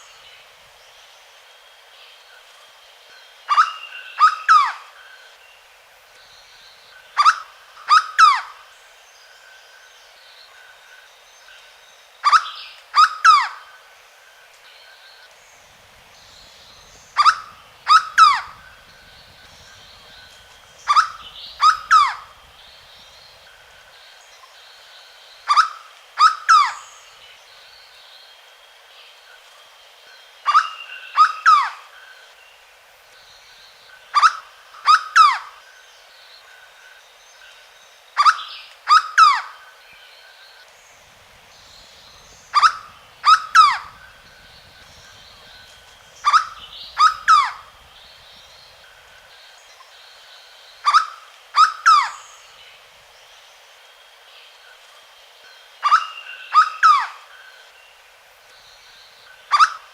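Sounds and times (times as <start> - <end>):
faint background birds or insects: 0.0 - 59.9
bird singing downward-sliding notes: 15.7 - 23.8, 41.0 - 49.2.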